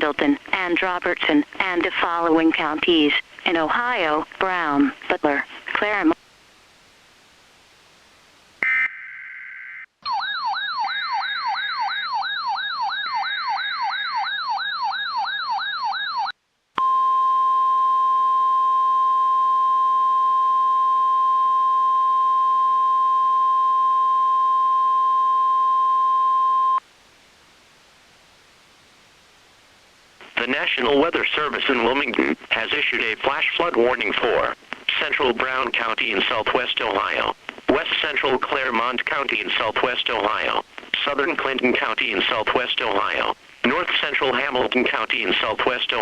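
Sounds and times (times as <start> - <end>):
steady warning alarm tone: 10.1 - 17.6.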